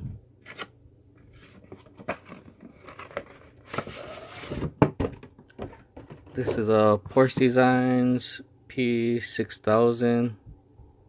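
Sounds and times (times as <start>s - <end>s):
cardboard packaging rustling: 0.4s - 7.5s.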